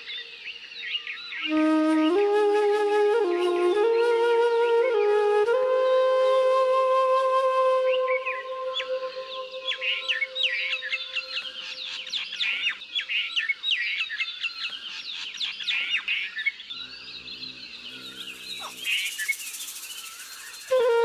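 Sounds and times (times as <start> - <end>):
small birds chirping: 8.2 - 21.0.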